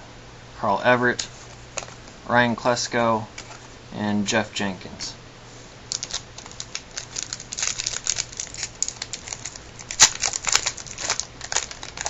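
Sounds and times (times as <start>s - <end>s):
plastic wrapper crinkling: 5.9s - 12.0s.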